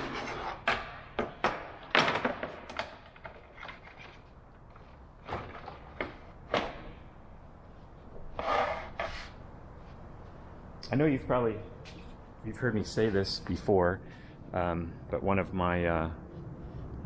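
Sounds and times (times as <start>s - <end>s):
plywood scraping slide: 8.3s - 9.4s.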